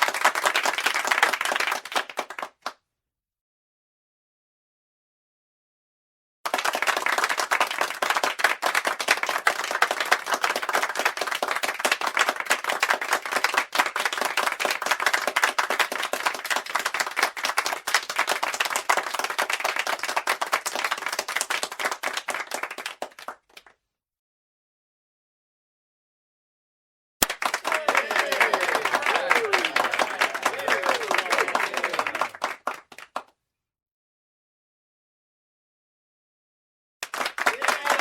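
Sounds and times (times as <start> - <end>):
audience applause: 0.0 - 2.5, 6.5 - 23.3, 27.2 - 33.2, 37.0 - 38.0.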